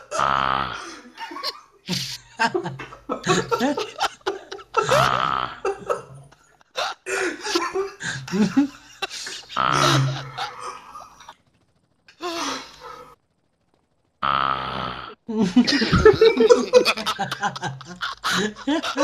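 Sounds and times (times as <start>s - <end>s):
man snoring with throaty snorts: 0.1s - 1.0s, 4.9s - 5.8s, 9.6s - 10.6s, 14.2s - 15.2s
people laughing: 0.8s - 11.4s, 15.3s - 19.0s.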